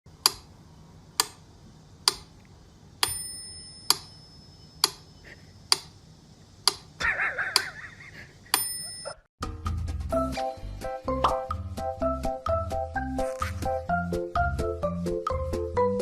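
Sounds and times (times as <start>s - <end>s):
sharp evenly spaced ticks: 0.1s - 3.3s, 3.9s - 8.6s
thin bell-like tone: 8.6s - 9.2s.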